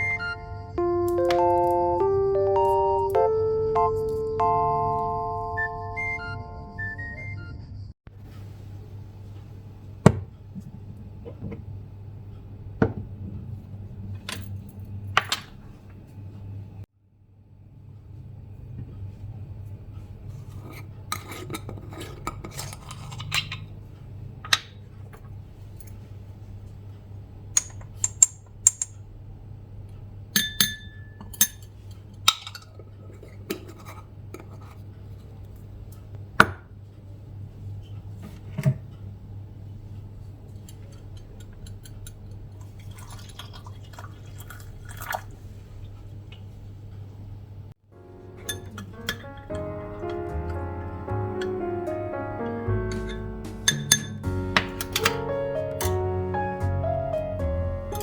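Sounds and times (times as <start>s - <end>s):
dishes and cutlery clinking: 20.5s - 23.8s, 30.4s - 34.8s, 48.4s - 50.2s, 52.9s - 55.2s.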